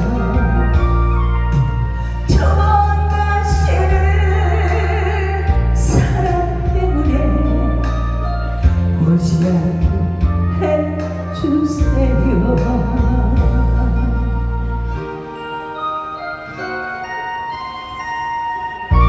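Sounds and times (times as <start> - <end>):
woman singing: 0.0 - 14.5
amplified backing track: 0.0 - 19.0.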